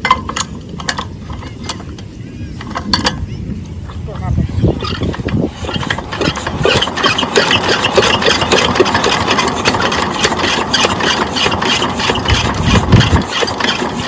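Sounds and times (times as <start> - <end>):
diesel engine knocking: 5.7 - 14.0.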